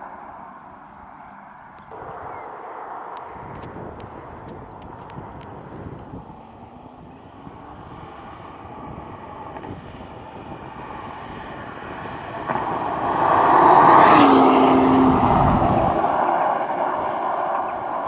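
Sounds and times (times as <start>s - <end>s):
car driving past: 11.0s - 18.0s.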